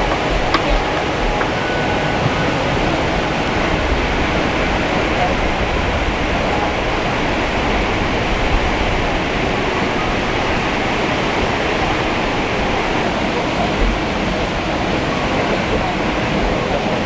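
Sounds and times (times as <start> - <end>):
waterfall crashing: 0.0 - 3.8, 13.0 - 17.0.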